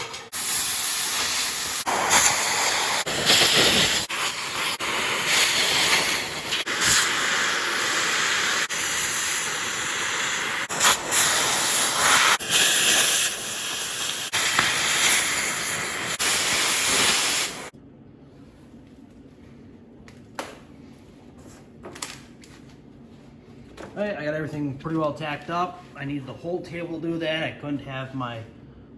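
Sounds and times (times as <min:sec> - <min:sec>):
cutting torch hissing: 0:00.0 - 0:17.7.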